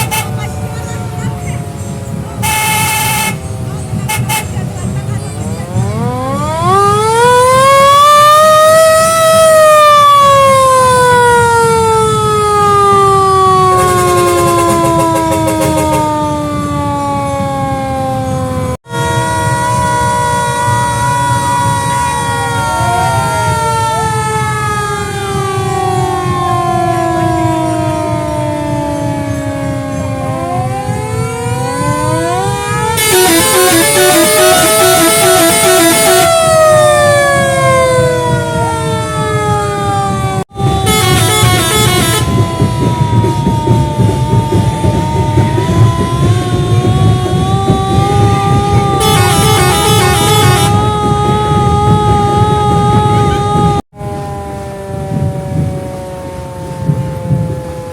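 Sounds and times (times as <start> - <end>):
fire engine siren gliding down: 0.0 - 57.9.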